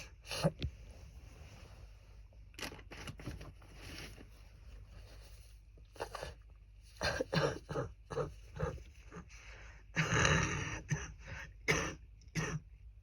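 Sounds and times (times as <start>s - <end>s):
wet phlegmy coughing: 7.0s - 9.3s, 9.9s - 12.8s.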